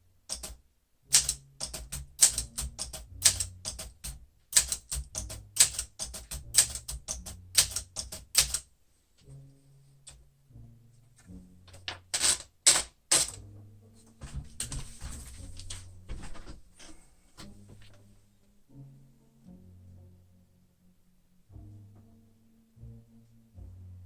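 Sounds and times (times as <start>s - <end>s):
quiet background music: 0.0s - 24.0s
typewriter key strikes: 0.3s - 8.6s, 12.1s - 13.4s.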